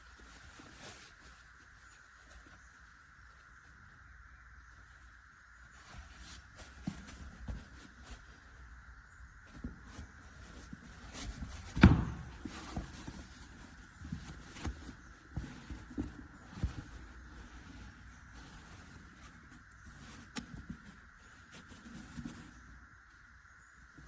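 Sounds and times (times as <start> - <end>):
faint steady hum: 0.0 - 24.0
soft knocks and handling noises: 5.6 - 8.8, 9.4 - 23.2
loud thump: 11.7 - 12.7.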